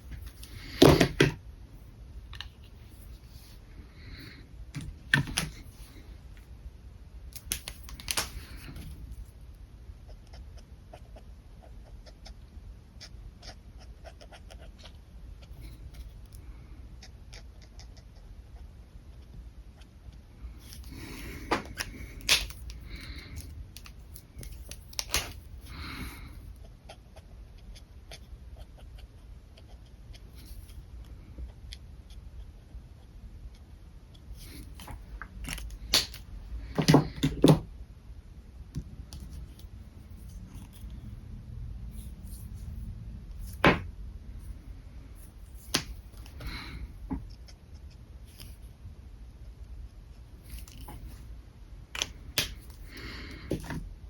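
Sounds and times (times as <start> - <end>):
marker caps clicking: 7.4 - 8.5, 21.6 - 25.4.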